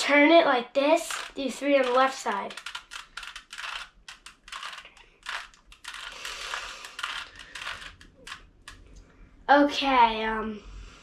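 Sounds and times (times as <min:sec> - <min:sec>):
puzzle cube layers clicking: 0:01.0 - 0:08.8.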